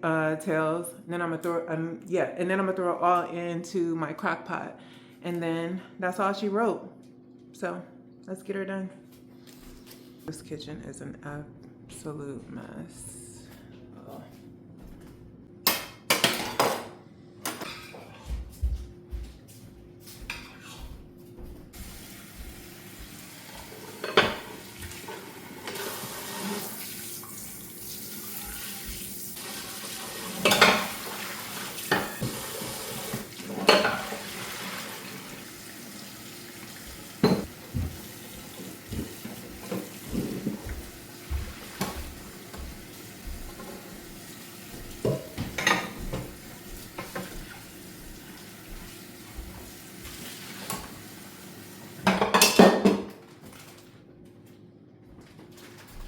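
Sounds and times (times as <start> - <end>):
dishes and pots clanking: 15.7 - 18.4, 23.9 - 26.6, 30.3 - 31.1, 31.8 - 32.4, 33.1 - 34.3, 37.2 - 38.0, 45.0 - 46.4, 52.0 - 53.2
water running from tap: 21.8 - 52.2.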